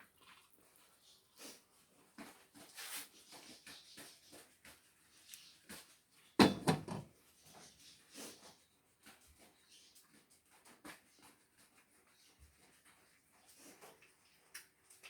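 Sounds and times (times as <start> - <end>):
objects knocking and rustling: 5.7 - 7.7.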